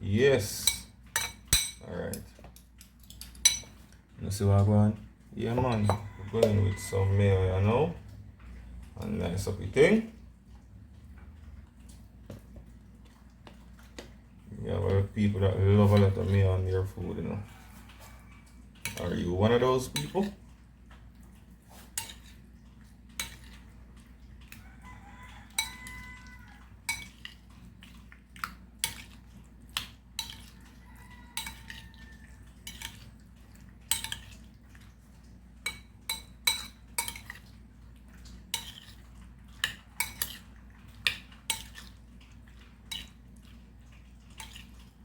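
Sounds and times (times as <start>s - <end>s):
spoon scraping a bowl: 5.5s - 7.4s, 15.3s - 18.2s, 21.7s - 22.4s, 25.4s - 27.5s, 30.2s - 33.2s, 33.9s - 34.5s, 35.6s - 37.5s, 38.5s - 40.5s.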